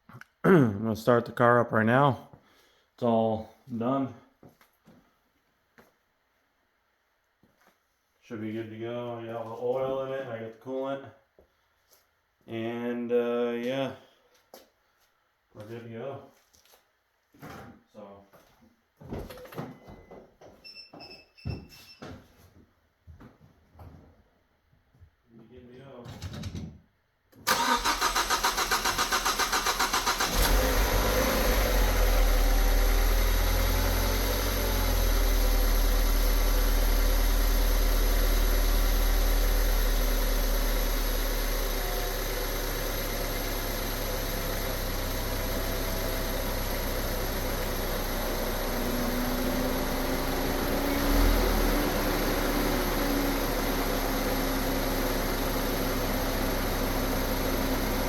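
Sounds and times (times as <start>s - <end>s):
starter motor cranking: 27.5s - 31.2s
car engine idling: 27.5s - 58.0s.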